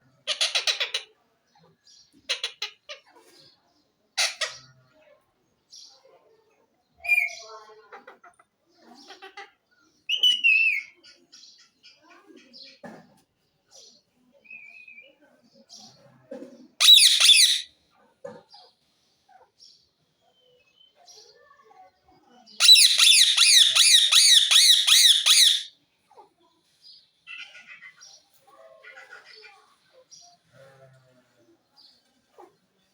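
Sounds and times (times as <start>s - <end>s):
parrot making harsh calls: 16.8s - 17.7s, 22.6s - 25.7s.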